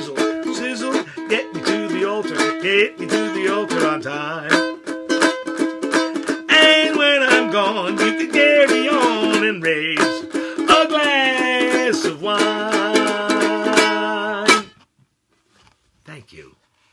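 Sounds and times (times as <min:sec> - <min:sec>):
person singing: 0:00.0 - 0:05.0, 0:06.1 - 0:14.7
strummed string instrument: 0:00.0 - 0:14.9.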